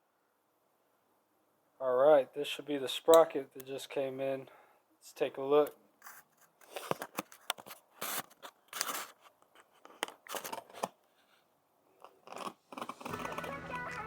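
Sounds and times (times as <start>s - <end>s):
packaging crinkling and scraping: 6.0s - 11.4s, 12.0s - 14.0s
music: 13.0s - 14.0s.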